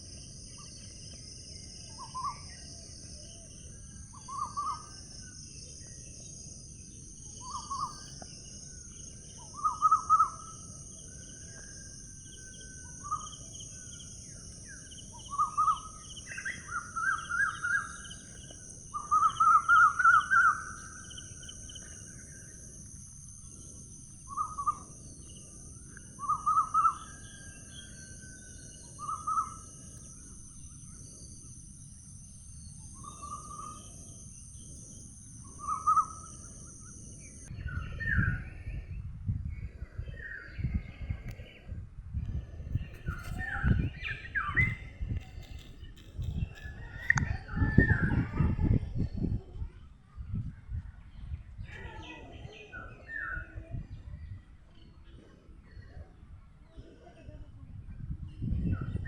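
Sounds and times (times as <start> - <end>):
high-pitched insect drone: 0.0 - 38.8.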